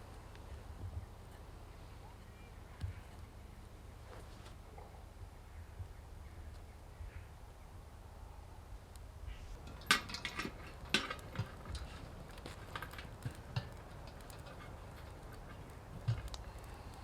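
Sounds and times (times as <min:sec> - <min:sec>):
metal cookware clinking: 0:09.6 - 0:16.4
light ticks: 0:11.0 - 0:17.0.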